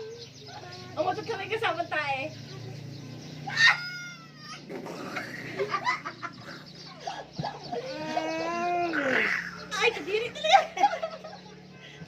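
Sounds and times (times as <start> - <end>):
person making whining wail: 7.8 - 9.6
person squealing: 7.8 - 9.6.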